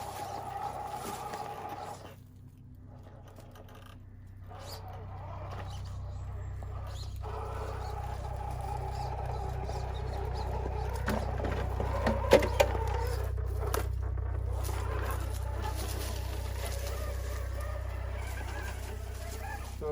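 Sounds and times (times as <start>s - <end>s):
electric motor whining: 0.0s - 2.2s, 3.2s - 19.9s.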